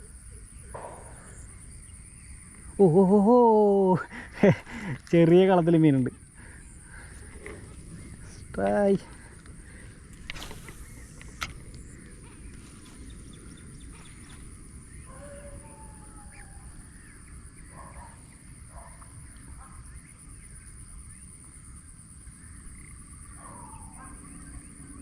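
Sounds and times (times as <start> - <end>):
high-pitched insect hum: 0.0 - 25.0
faint bird calls: 5.9 - 21.2, 22.3 - 25.0.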